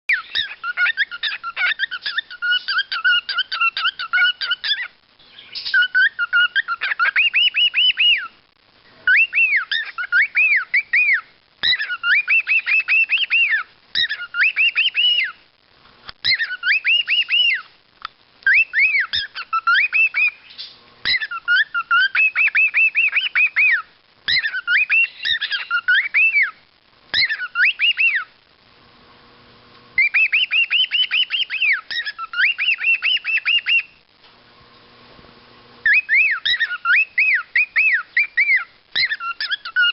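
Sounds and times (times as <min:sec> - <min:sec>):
cockatiel whistling: 0:00.1 - 0:08.3, 0:09.0 - 0:15.4, 0:16.2 - 0:17.7, 0:18.4 - 0:28.3, 0:30.0 - 0:33.9, 0:35.8 - 0:39.9.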